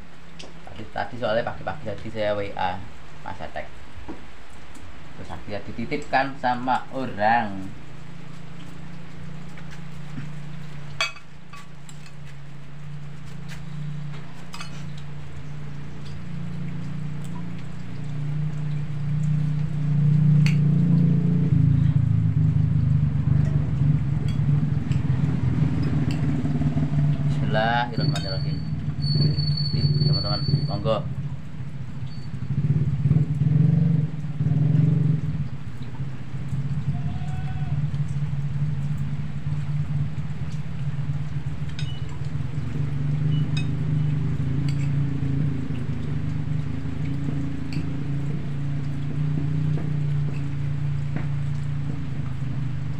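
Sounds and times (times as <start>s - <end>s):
low mechanical hum: 0.0s - 29.8s.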